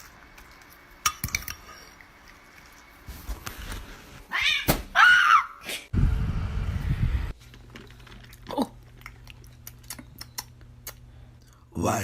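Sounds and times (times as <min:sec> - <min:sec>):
low rumble: 0:06.0 - 0:07.4.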